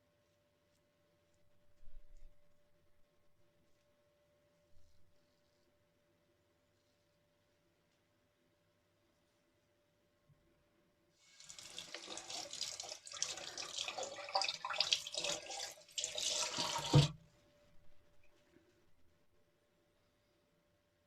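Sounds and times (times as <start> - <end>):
tap water running into sink: 11.2 - 17.2.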